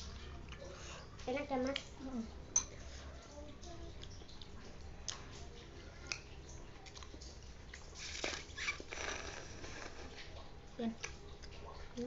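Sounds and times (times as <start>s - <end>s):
wet chewing and mouth sounds: 2.8s - 12.0s.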